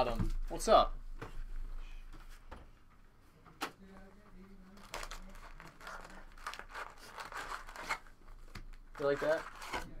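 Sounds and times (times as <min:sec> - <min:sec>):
foil wrapper crinkling: 0:04.6 - 0:08.1, 0:08.7 - 0:09.9
cards being handled: 0:04.7 - 0:09.9.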